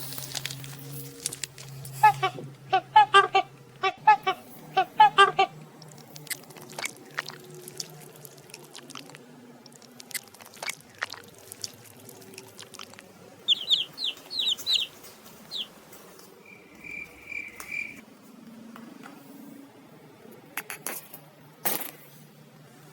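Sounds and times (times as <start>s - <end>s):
small bird chirping: 13.4s - 15.8s, 16.5s - 18.0s.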